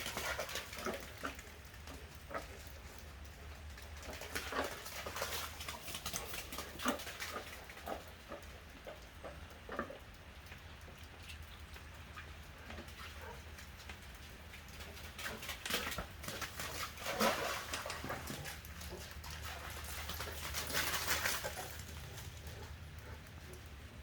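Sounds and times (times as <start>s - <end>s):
dog scuffling and clicking: 14.7s - 23.6s.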